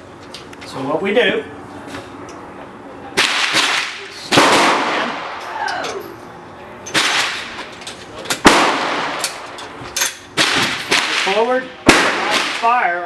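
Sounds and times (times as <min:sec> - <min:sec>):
gunshots with echo: 0:08.4 - 0:09.3.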